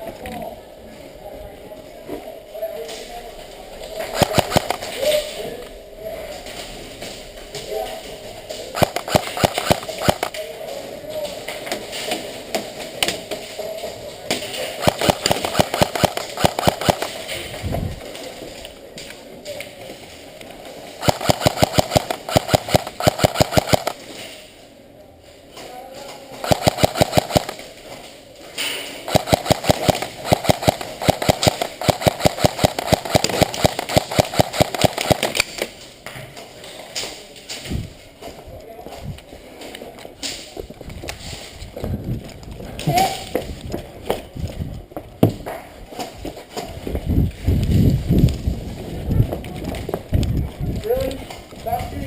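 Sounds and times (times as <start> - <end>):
airsoft gun shots: 4.2 - 4.8, 8.8 - 10.3, 14.8 - 17.2, 21.0 - 24.0, 26.4 - 27.6, 29.1 - 35.4.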